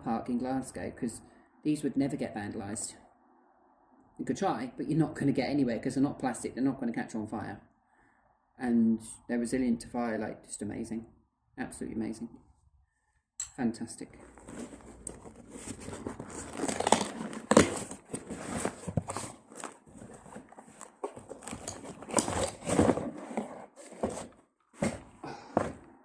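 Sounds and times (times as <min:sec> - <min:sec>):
packaging crinkling and tearing: 0:14.3 - 0:24.3.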